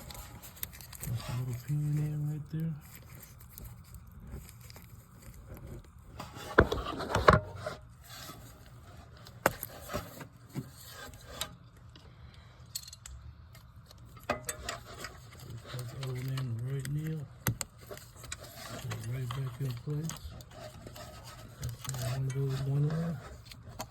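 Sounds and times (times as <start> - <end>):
tools clicking and scraping: 0.0 - 12.0, 12.6 - 23.9.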